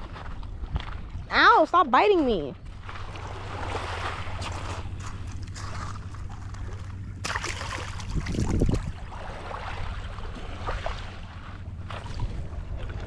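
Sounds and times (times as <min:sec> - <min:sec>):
low rumble: 0:00.0 - 0:13.0
wind rumbling on microphone: 0:00.0 - 0:13.0
small waves washing among rocks: 0:02.7 - 0:12.8.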